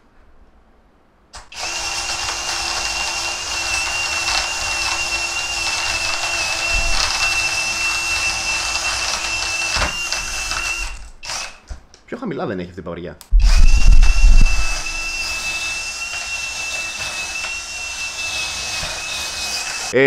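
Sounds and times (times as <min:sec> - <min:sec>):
drill motor whine: 0:01.4 - 0:11.6, 0:13.4 - 0:20.0.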